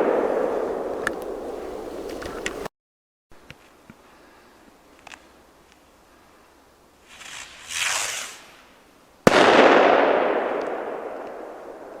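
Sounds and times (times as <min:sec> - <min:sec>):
firework bang: 0:00.0 - 0:02.5, 0:09.3 - 0:11.5
firework hissing rush: 0:07.0 - 0:08.8.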